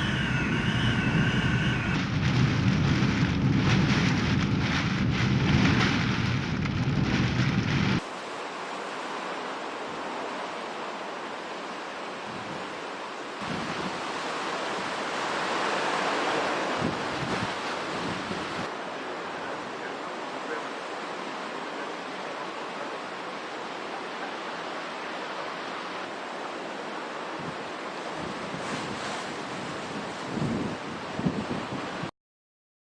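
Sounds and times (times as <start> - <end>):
wind buffeting microphone: 0.0 - 8.0, 13.4 - 14.1, 16.7 - 18.7, 28.2 - 32.1
heavy surf: 0.0 - 32.1
hurricane wind and rain: 0.0 - 32.1.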